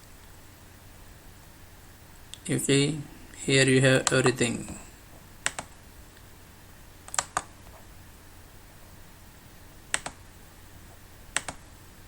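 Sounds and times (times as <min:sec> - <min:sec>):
low room hum: 0:00.0 - 0:12.0
computer mouse clicks: 0:05.4 - 0:05.8, 0:07.1 - 0:07.5, 0:09.9 - 0:10.2, 0:11.3 - 0:11.6.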